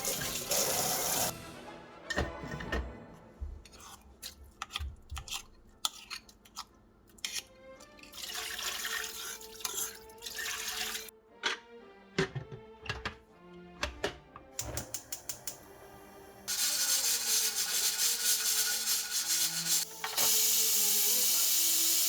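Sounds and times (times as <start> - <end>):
tap water running into sink: 0.0 - 1.3, 8.2 - 11.1
soft background music: 0.0 - 22.0.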